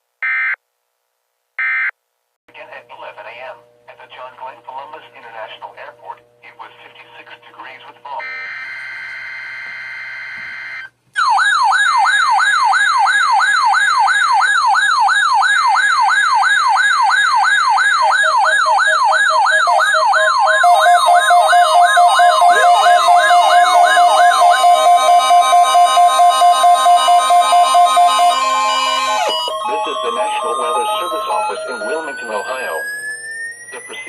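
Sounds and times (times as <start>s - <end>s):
electronic siren sweeping upward: 8.2s - 34.0s
rapid pulsed beeping alarms: 8.2s - 34.0s
steady data tones: 14.2s - 34.0s.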